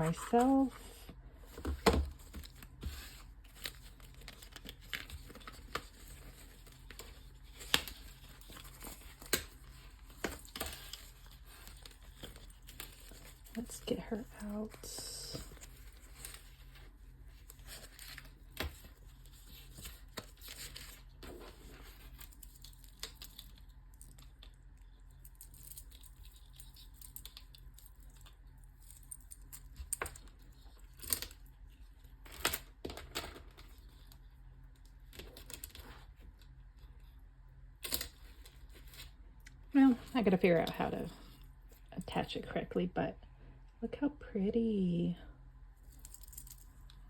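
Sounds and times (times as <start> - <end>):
packaging rustling and tearing: 1.5 - 36.5.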